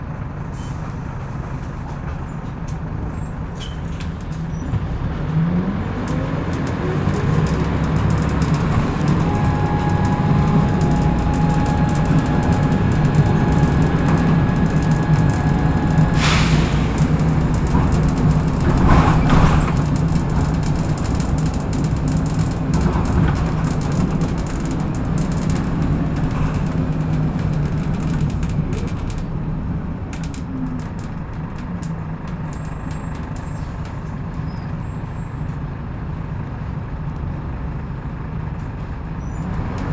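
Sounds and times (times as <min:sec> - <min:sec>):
bus engine running: 0:00.0 - 0:39.9
air brake hiss: 0:00.6 - 0:01.0, 0:16.1 - 0:17.2.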